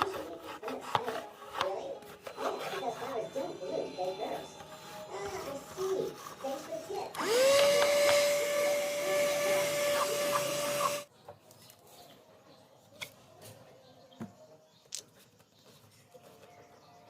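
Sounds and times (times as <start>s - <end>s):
handheld vacuum cleaner whine: 4.6s - 11.1s.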